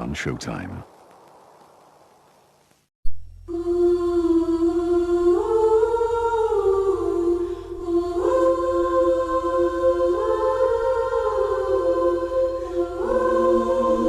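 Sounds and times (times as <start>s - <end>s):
low steady hum: 0.1s - 14.0s
wordless choral singing: 3.5s - 14.0s.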